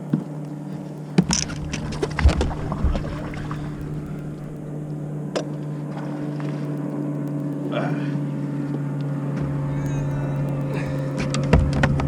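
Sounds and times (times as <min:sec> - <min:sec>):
steady low hum: 0:00.0 - 0:12.0
knocks and thumps on boat: 0:01.2 - 0:04.8
water splashing: 0:01.2 - 0:05.3.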